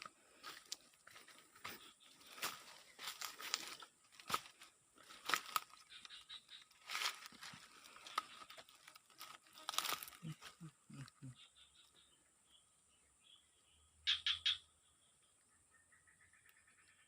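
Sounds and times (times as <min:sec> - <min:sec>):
rustling and crackling: 0:00.0 - 0:10.6.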